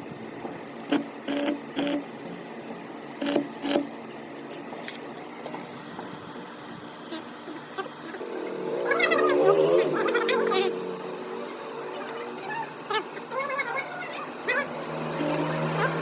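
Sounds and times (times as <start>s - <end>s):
welding arc buzzing: 0.6s - 4.6s.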